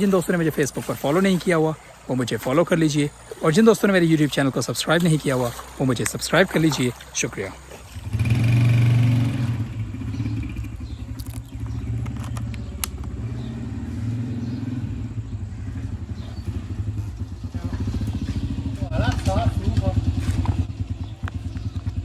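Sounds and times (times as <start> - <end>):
motorcycle engine running: 7.8 - 22.0.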